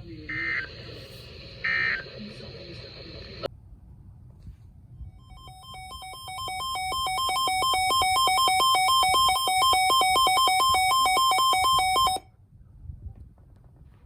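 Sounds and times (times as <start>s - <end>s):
electronic alert tone: 5.2s - 12.2s.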